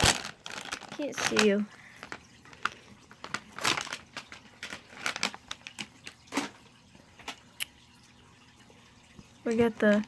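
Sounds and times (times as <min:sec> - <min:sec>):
plastic wrappers rustling: 0:00.0 - 0:07.4.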